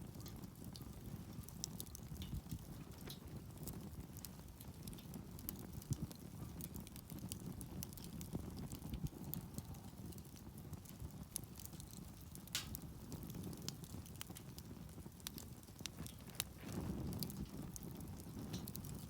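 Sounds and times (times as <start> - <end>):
campfire crackling and popping: 0.0 - 19.0.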